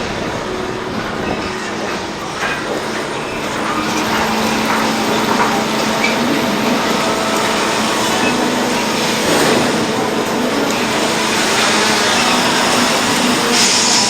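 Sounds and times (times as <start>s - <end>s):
sawmill machinery running: 0.0s - 14.0s.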